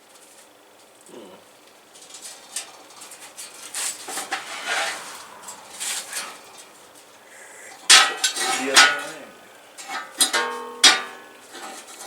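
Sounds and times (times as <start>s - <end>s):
metal parts and tools scraping: 2.0s - 7.2s, 7.8s - 12.0s.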